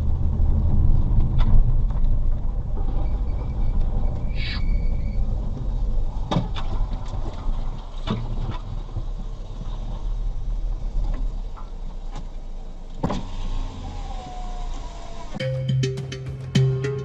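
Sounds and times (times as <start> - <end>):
vehicle rumbling: 0.0 - 17.0
high squeal: 2.8 - 5.4, 13.8 - 15.4.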